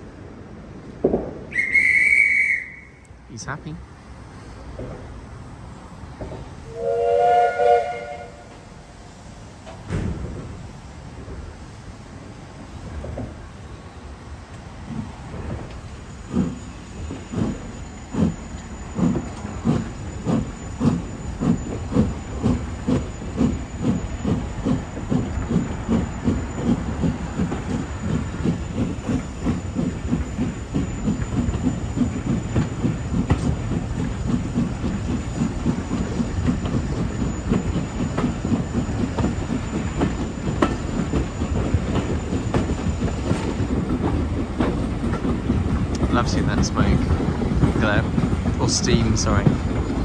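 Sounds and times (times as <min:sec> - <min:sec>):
steam locomotive chuffing: 0:01.5 - 0:02.9, 0:06.2 - 0:11.5, 0:14.6 - 0:50.0
carriage wheels clattering on rails: 0:16.4 - 0:50.0.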